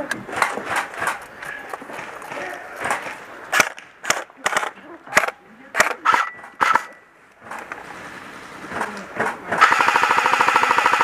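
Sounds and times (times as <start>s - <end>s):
airsoft guns firing: 8.8s - 11.0s.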